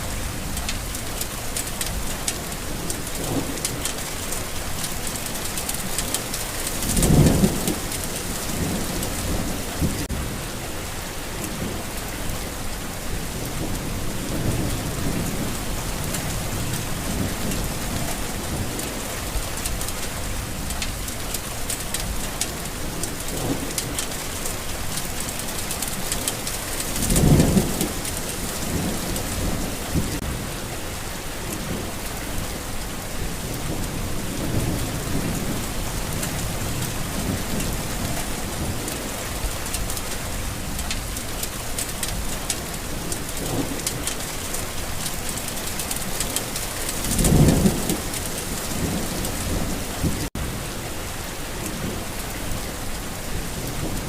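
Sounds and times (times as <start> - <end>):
steady rain with drop patter: 0.0 - 54.0
rolling thunder: 26.0 - 30.5, 46.2 - 50.5.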